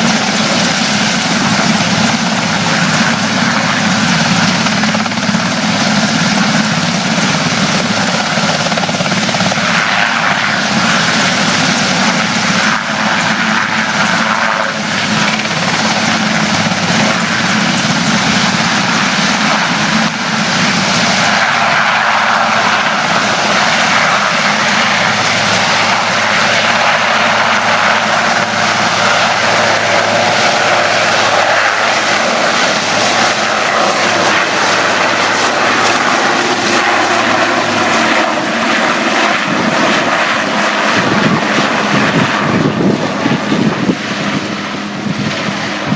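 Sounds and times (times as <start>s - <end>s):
helicopter rotors and engine: 0.0s - 45.9s.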